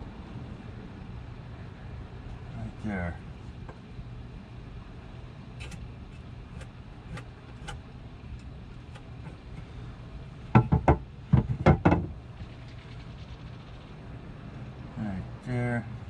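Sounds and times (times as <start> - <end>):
steady low hum: 0.0 - 16.0
sharp knocks on wooden board: 10.6 - 12.1.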